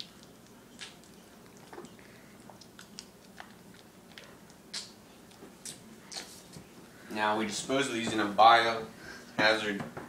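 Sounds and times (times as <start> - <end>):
person chewing: 0.0 - 6.5.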